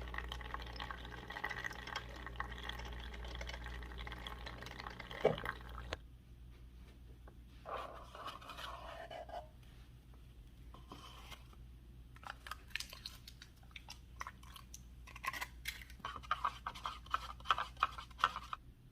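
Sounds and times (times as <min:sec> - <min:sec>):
low steady hum: 0:00.0 - 0:18.9.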